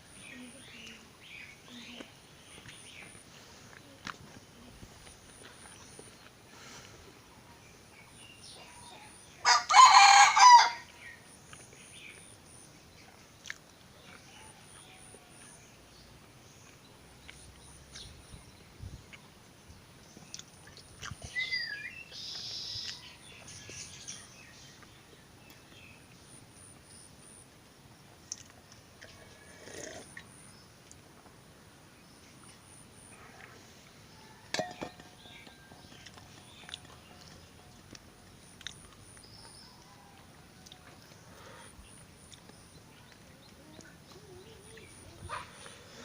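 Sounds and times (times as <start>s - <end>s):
rooster crowing: 9.4s - 10.9s.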